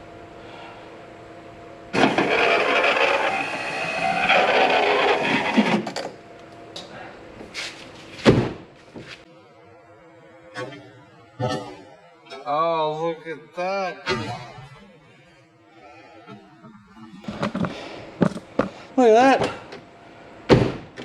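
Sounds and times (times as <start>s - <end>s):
power window motor running: 2.0s - 6.0s.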